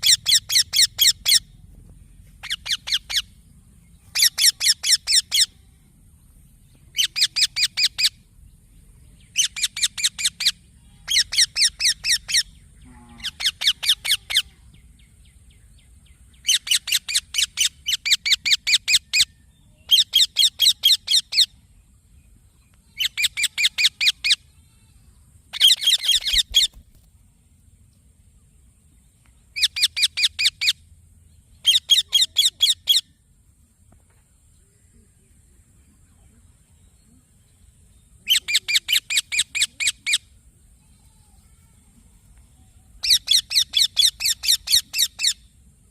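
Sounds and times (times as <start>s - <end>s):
parrot chirping: 0.0s - 1.5s, 2.4s - 3.4s, 4.1s - 5.5s, 6.9s - 8.2s, 9.3s - 12.5s, 13.3s - 14.4s, 16.4s - 19.3s, 19.9s - 21.5s, 23.0s - 24.4s, 25.5s - 26.8s, 29.6s - 30.8s, 31.6s - 33.1s, 38.2s - 40.3s, 43.0s - 45.5s.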